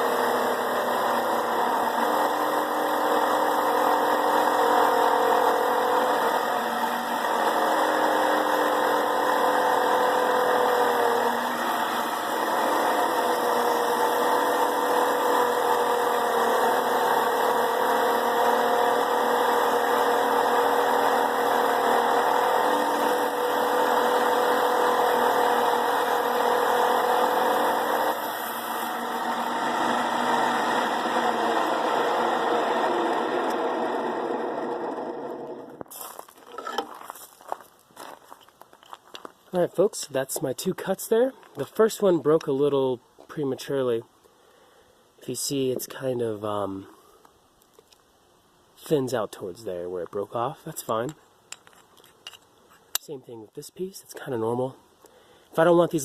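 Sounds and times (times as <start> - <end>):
trim saw cutting stone: 0.0 - 35.8.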